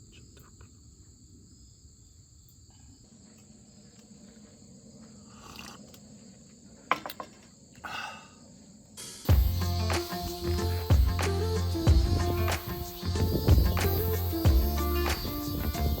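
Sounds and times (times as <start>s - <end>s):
high-pitched insect chirring: 9.0s - 16.0s
music: 9.0s - 16.0s.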